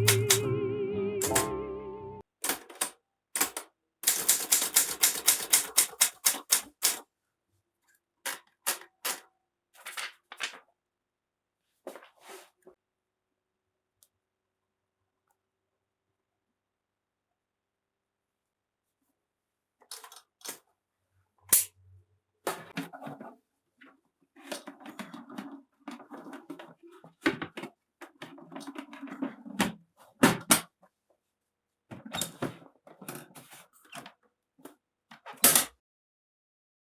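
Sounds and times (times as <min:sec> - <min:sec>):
sharp loud typewriter strikes: 0:00.0 - 0:00.4
typewriter clacking: 0:00.0 - 0:00.4, 0:02.4 - 0:07.0.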